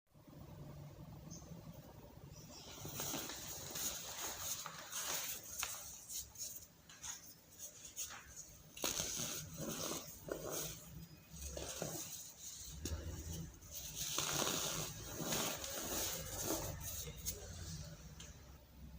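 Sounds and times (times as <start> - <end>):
compressed powder crunching by hand: 8.0 - 17.4.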